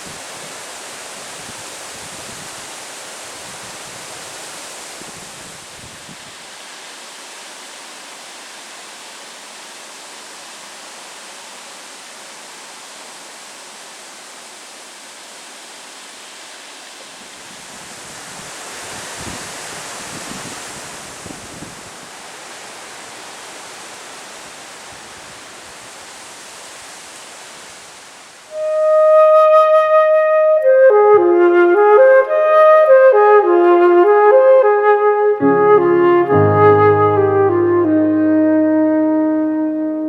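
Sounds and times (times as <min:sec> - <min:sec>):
wind gusts buffeting microphone: 0:17.4 - 0:22.2.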